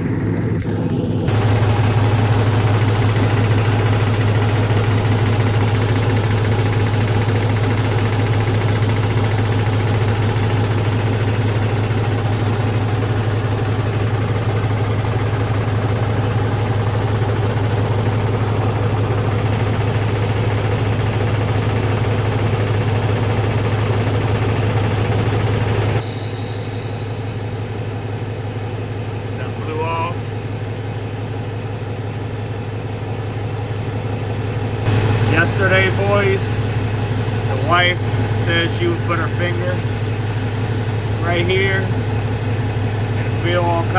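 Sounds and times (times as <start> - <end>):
diesel truck engine idling: 0.0 - 43.9.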